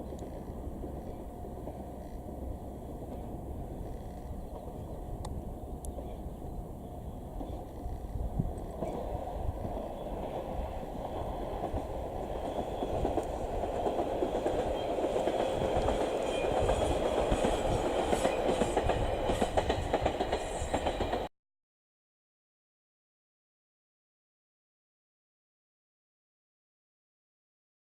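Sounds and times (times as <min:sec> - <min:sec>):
train rumble: 0:00.0 - 0:21.3
train wheels clattering over rail joints: 0:07.3 - 0:21.3.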